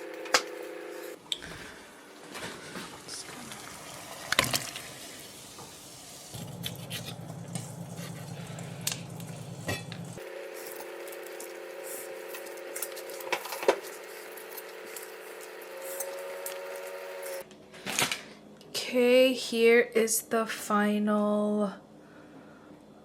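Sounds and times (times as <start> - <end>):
utensils and dishes clinking: 6.4 - 10.8
steady hum: 6.4 - 17.4.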